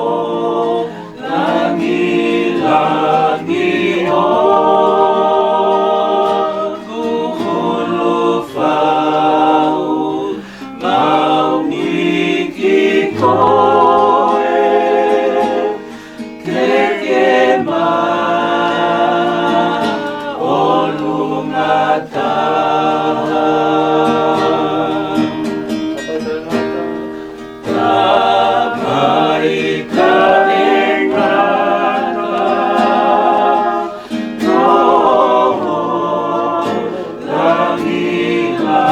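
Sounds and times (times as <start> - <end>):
group singing a hymn: 0.0 - 25.9, 26.5 - 38.9.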